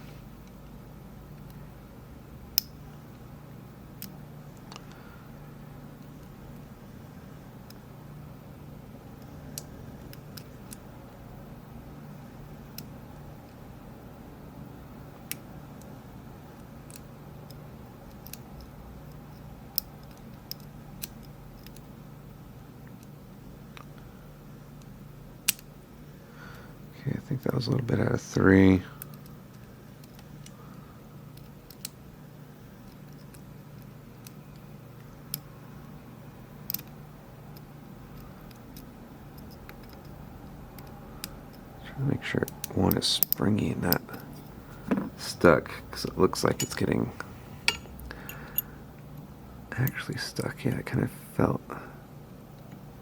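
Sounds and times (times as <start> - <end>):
faint low hum: 44.4 - 48.1
lock pick clicking on pins: 44.5 - 48.0.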